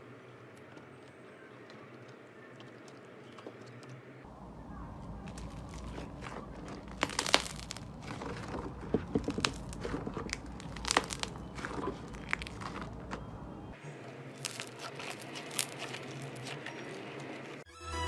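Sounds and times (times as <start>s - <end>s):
low background hum: 0.0s - 17.7s
slime crackling and popping: 5.2s - 13.2s, 14.3s - 17.1s.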